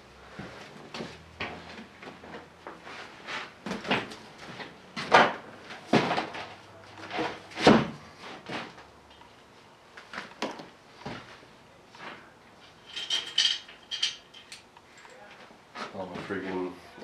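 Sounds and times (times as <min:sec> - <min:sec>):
tools clunking and knocking: 0:12.7 - 0:15.2.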